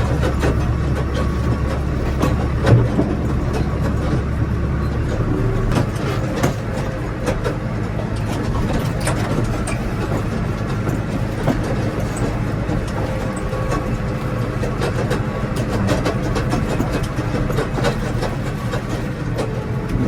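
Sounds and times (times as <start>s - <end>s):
machinery rattling and knocking: 0.0s - 20.0s
tractor engine running: 0.0s - 20.0s.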